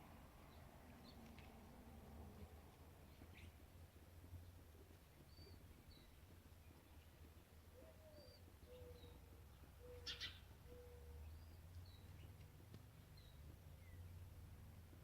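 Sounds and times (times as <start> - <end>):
small birds chirping: 0.1 - 15.0
bird cooing song: 7.7 - 12.1.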